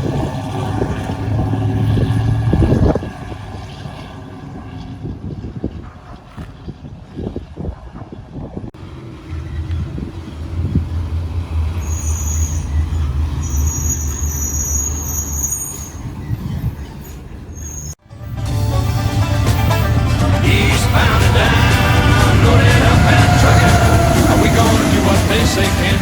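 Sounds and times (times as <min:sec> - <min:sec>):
diesel truck driving past: 0:00.0 - 0:26.0
music: 0:18.0 - 0:26.0
thin high whine: 0:18.7 - 0:26.0.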